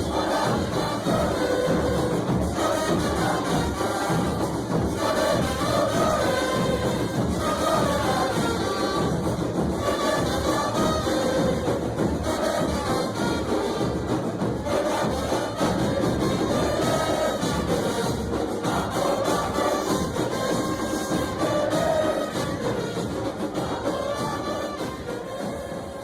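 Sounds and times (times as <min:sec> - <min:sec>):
brass band music: 0:00.0 - 0:26.0
crowd singing: 0:00.0 - 0:26.0.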